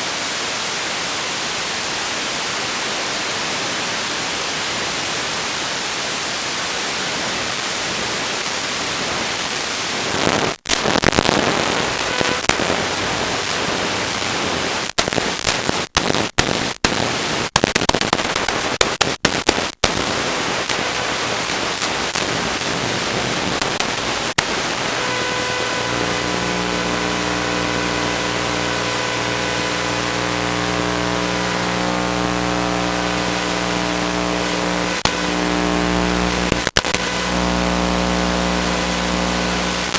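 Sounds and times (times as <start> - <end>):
static hiss: 0.0 - 39.9
steady hum with overtones: 10.1 - 14.8, 19.9 - 39.9
signal clicks: 34.1 - 37.4.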